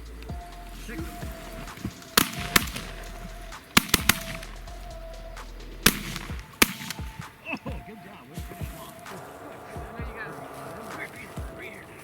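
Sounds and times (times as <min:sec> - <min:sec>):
shotgun shots: 0:01.5 - 0:04.8, 0:05.8 - 0:07.5.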